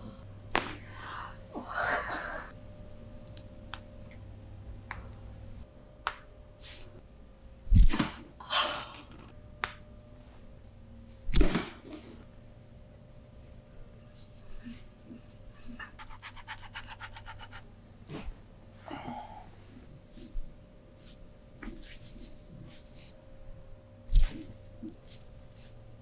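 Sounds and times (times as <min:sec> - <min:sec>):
breathy gasp: 0:18.8 - 0:19.5.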